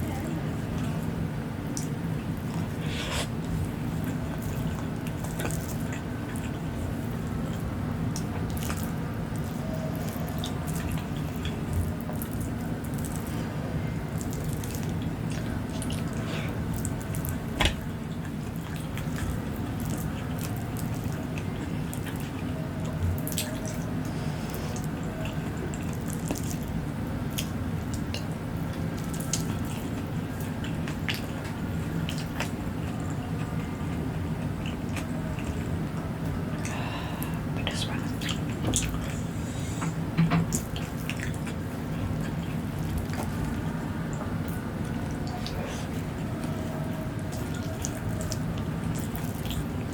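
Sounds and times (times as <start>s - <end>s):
steady low hum: 0.0s - 49.9s
wet chewing and mouth clicks: 1.7s - 39.3s, 40.5s - 49.9s.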